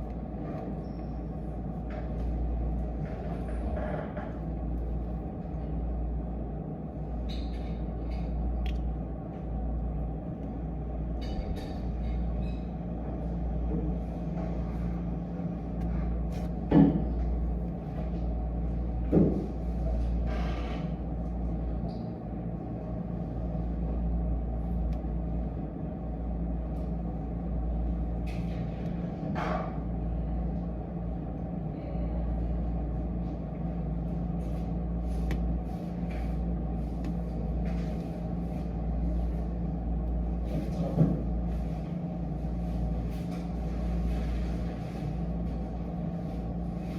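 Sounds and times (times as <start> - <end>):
low hum and rumble: 0.0 - 46.9.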